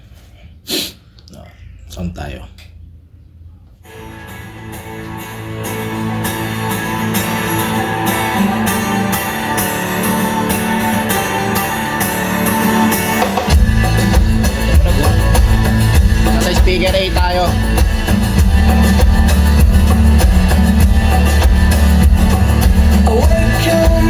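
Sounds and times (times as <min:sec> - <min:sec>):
guitar music over loudspeakers: 0:03.9 - 0:24.0
heavy bass and drums: 0:13.3 - 0:24.0.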